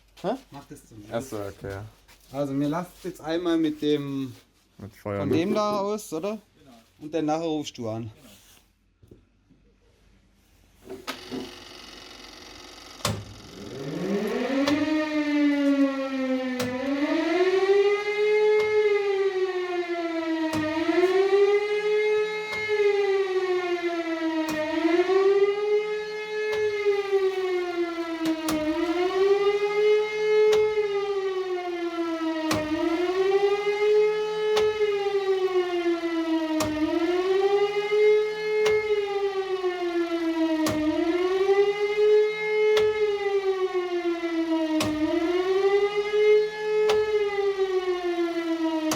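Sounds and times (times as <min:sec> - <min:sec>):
civil defence siren wailing: 0:01.1 - 0:04.4, 0:13.2 - 0:48.9
contactor clicking: 0:16.5 - 0:17.6, 0:20.4 - 0:21.5, 0:28.2 - 0:31.0, 0:31.8 - 0:39.8, 0:40.6 - 0:43.8, 0:44.6 - 0:47.9.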